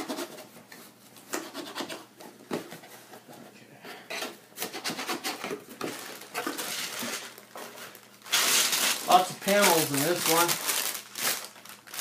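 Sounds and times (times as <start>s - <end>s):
plastic bags rustling: 5.8s - 12.0s.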